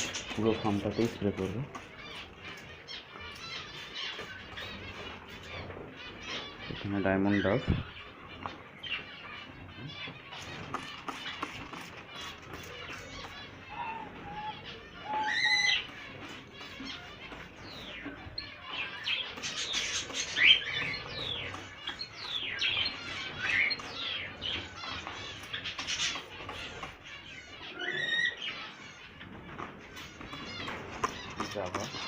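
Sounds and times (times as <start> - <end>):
cage birds chirping and squawking: 0.0 - 32.0
long steady bird call: 7.8 - 32.0.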